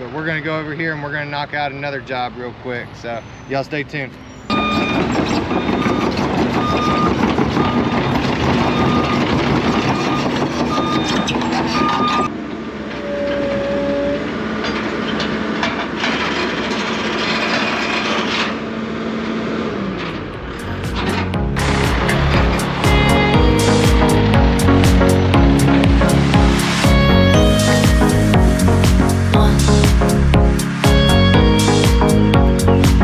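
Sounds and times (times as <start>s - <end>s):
electronic reversing beeps: 4.2s - 12.3s
vehicle engine running: 19.2s - 33.0s.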